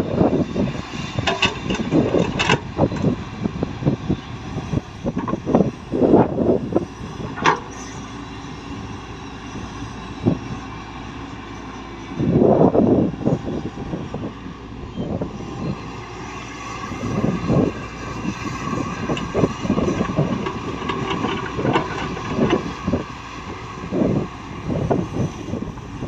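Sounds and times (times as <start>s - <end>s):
diesel engine under load: 0.0s - 26.0s
clunks and scrapes of earth and rock: 0.6s - 3.3s, 4.8s - 10.7s, 16.2s - 26.0s.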